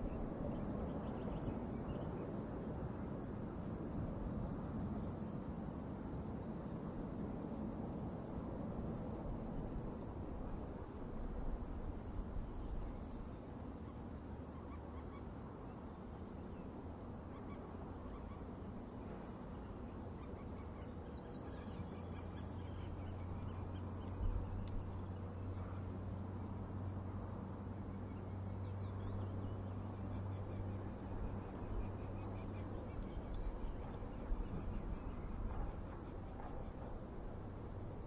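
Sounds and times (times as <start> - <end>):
faint bird calls: 12.6 - 16.7, 17.3 - 18.6, 19.5 - 25.9.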